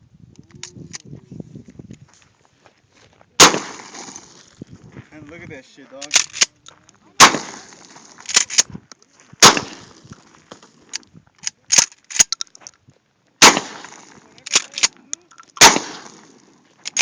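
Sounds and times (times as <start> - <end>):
shotgun shots echoing: 3.4 - 4.4, 7.2 - 8.6, 9.4 - 10.0, 13.4 - 14.9, 15.6 - 17.0
sharp clicks: 6.0 - 6.7, 8.2 - 8.7, 10.9 - 12.8, 13.4 - 17.0.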